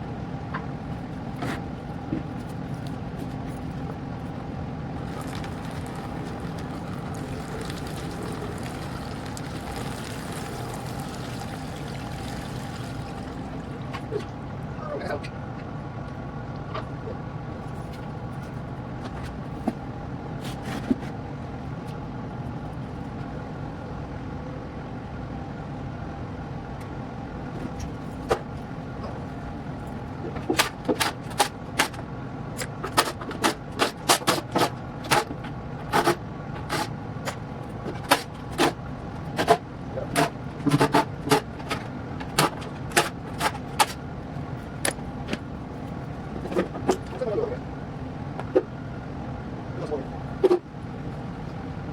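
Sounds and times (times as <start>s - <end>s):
steady machine hum: 0.0s - 20.4s.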